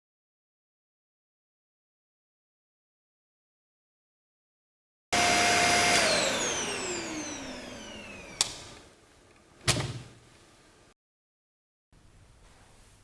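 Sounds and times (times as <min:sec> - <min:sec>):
vacuum motor winding down: 0:05.2 - 0:08.8.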